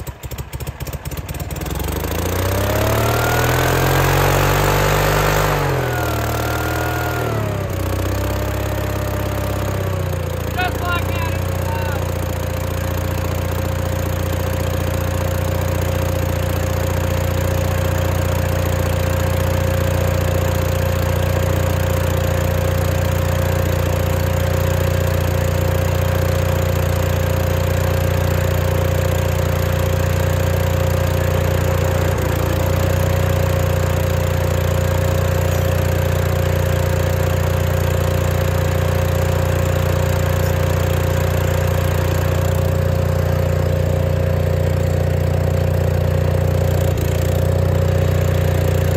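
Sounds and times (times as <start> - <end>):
skid steer engine idling: 0.0 - 48.9.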